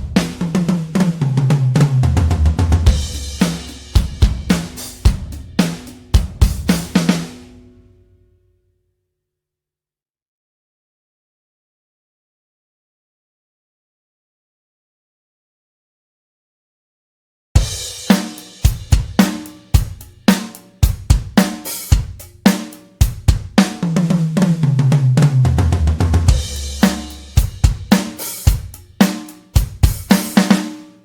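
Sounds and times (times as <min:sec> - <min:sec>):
drum kit beat: 0:00.0 - 0:07.7, 0:17.6 - 0:31.0
tom drum fill: 0:00.0 - 0:07.8, 0:17.6 - 0:30.8.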